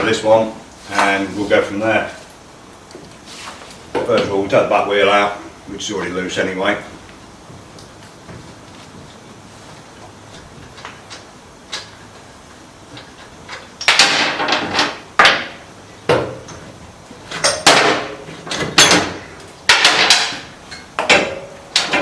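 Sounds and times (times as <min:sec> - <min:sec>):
tools clanking on metal: 0:17.3 - 0:22.0.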